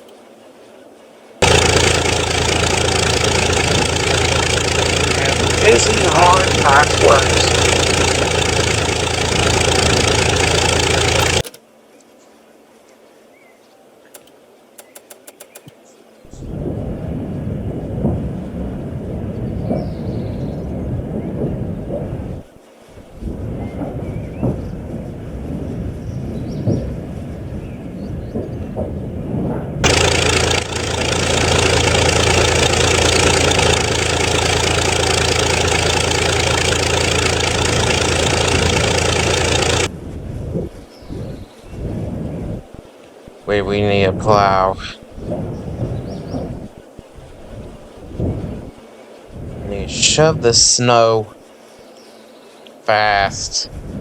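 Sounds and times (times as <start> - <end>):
engine running: 1.4 - 11.6, 14.2 - 15.7, 29.8 - 40.0
small clicks: 1.4 - 11.6, 14.1 - 15.8.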